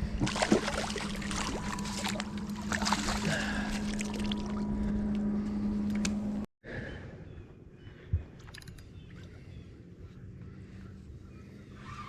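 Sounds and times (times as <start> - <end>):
boat motor humming: 0.0 - 6.5.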